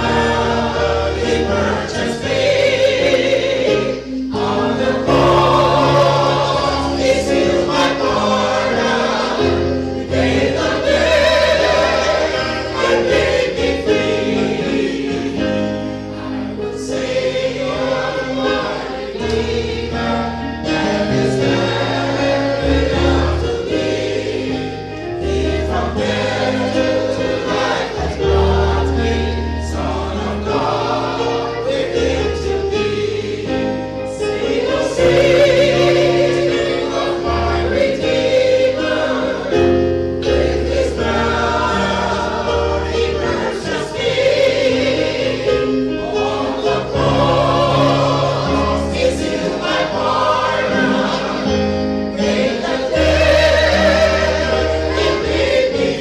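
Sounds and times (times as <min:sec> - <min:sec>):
choir singing a hymn: 0:00.0 - 0:56.0
instrumental accompaniment: 0:00.0 - 0:56.0.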